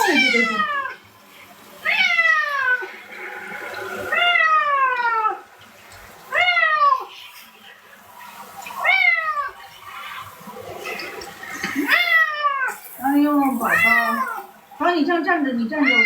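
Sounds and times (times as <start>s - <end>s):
cat meowing loudly: 0.0s - 1.0s, 13.5s - 14.5s.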